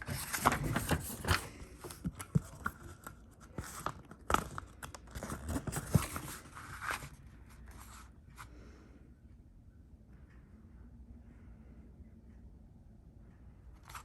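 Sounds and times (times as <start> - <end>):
paper rustling and crinkling: 0.0 - 8.1.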